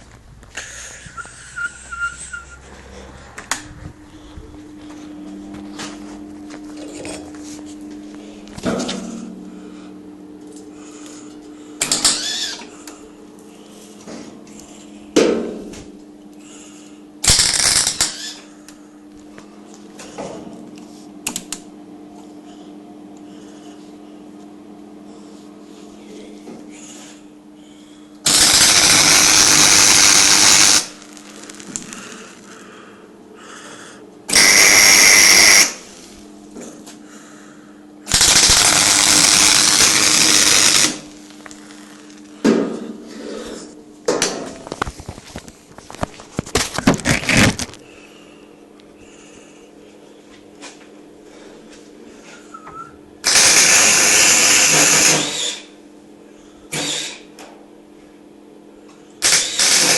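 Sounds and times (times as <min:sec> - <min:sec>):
steady low hum: 0:00.0 - 0:59.2
welding arc crackling: 0:11.8 - 0:12.6, 0:17.2 - 0:18.4, 0:28.2 - 0:32.6, 0:34.3 - 0:36.2, 0:38.1 - 0:42.4, 0:53.2 - 0:55.2, 0:59.2 - 0:59.9.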